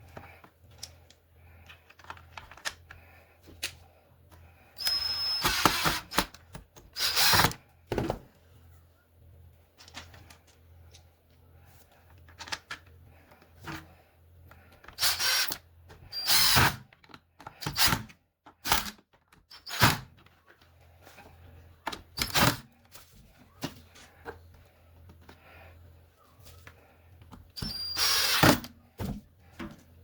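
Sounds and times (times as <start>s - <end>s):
hard plastic parts clicking: 0.1s - 8.1s.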